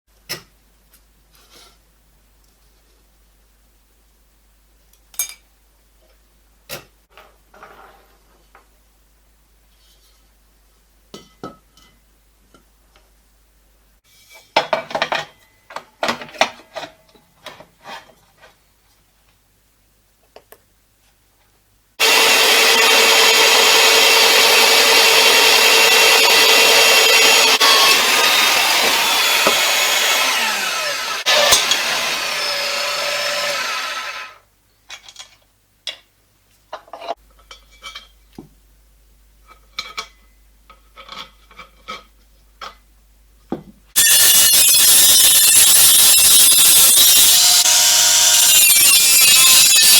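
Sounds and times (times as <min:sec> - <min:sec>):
angle grinder on steel: 0:22.0 - 0:34.4, 0:44.0 - 0:49.9.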